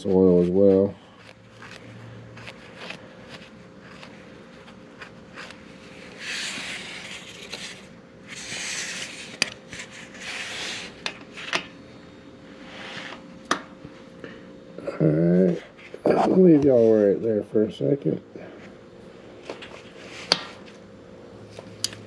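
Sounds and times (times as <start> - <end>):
rubbing and wiping strokes: 0.0 - 11.5
faint steady hum: 0.0 - 22.0.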